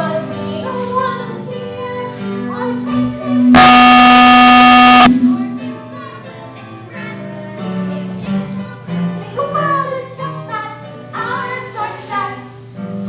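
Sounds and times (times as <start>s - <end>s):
low bass notes: 3.6s - 5.1s.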